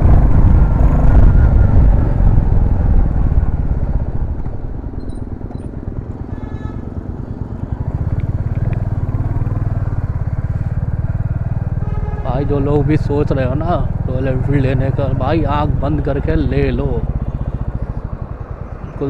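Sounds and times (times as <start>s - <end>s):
motorcycle engine pulsing: 0.0s - 19.0s.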